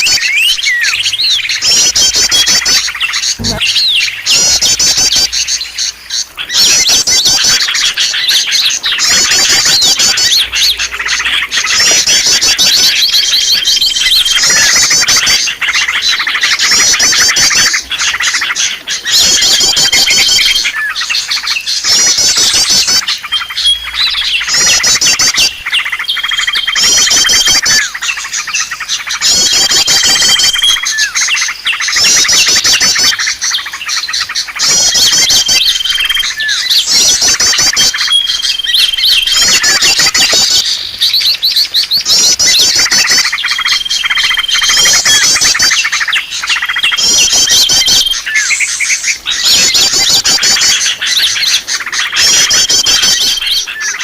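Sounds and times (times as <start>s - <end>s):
high bird trill: 0.0s - 54.0s
songbirds chirping: 0.0s - 54.0s.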